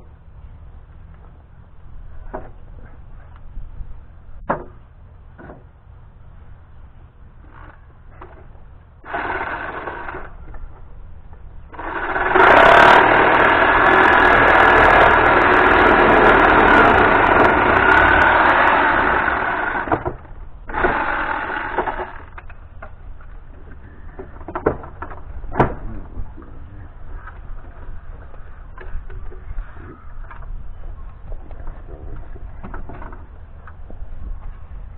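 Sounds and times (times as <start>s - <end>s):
power tool cutting wood: 9.0s - 10.4s, 11.7s - 22.4s.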